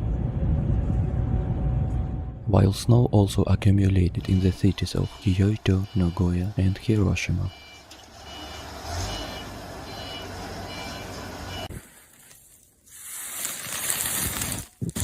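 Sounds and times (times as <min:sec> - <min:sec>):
vehicle low hum: 0:00.0 - 0:12.0
short beeps: 0:04.2 - 0:11.7.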